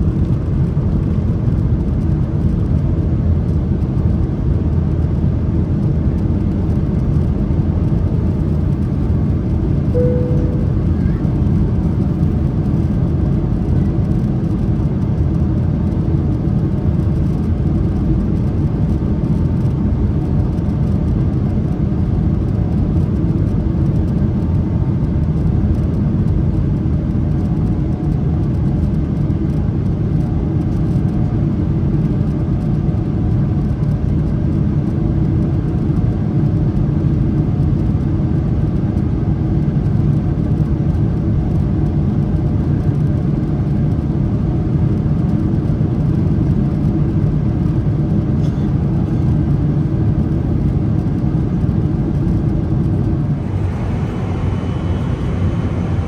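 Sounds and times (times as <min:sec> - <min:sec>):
airplane cabin rumble: 0:07.3 - 0:14.0, 0:48.3 - 0:56.0.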